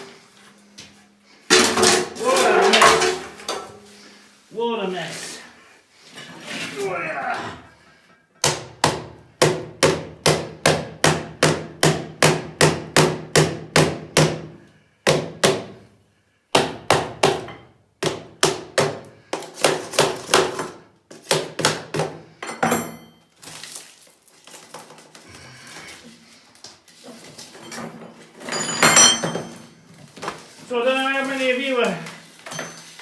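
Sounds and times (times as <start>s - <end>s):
hammer striking concrete: 8.4s - 14.5s, 16.6s - 22.2s.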